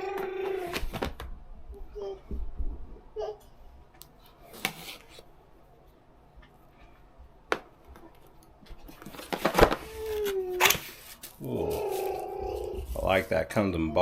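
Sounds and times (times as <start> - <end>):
cardboard and packing tearing: 9.2 - 13.3.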